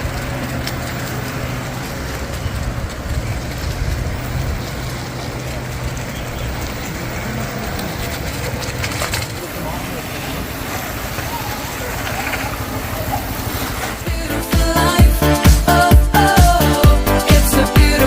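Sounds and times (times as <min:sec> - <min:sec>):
engine humming: 0:00.0 - 0:18.0
outdoor noise: 0:00.0 - 0:18.0.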